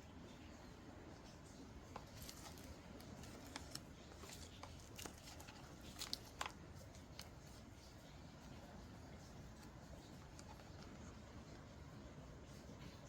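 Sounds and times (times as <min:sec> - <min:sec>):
paper rustling: 0:01.8 - 0:07.6.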